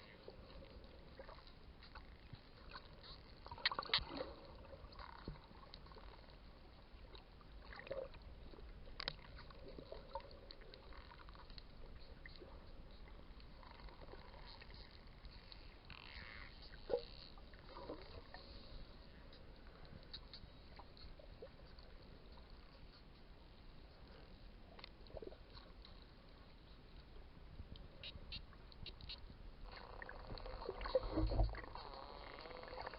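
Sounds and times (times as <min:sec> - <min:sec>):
low water hiss: 0:00.0 - 0:32.9
dolphin clicks: 0:01.8 - 0:04.2, 0:27.8 - 0:32.9.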